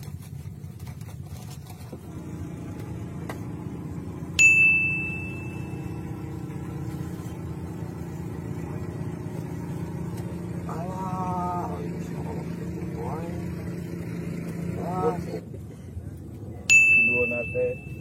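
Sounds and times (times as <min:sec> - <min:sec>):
sharp metallic ding: 0:04.4 - 0:06.2, 0:16.7 - 0:18.0
steady low rumble: 0:14.7 - 0:18.0.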